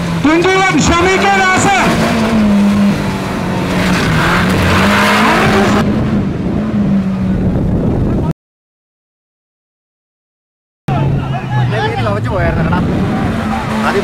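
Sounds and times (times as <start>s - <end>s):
jeep engine running: 0.0s - 8.3s, 10.9s - 14.0s
rushing noise: 0.0s - 8.3s.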